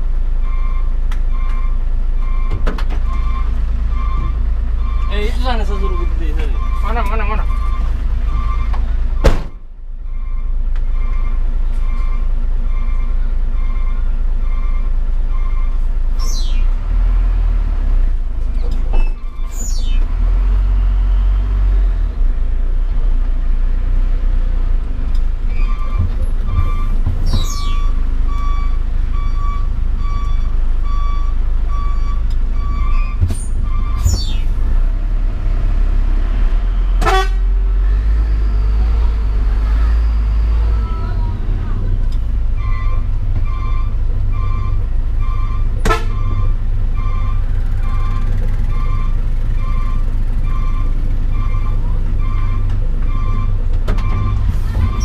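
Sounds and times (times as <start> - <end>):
truck engine drone: 0.0 - 55.0
short falling squeals: 25.5 - 28.0, 31.9 - 34.6, 42.6 - 55.0.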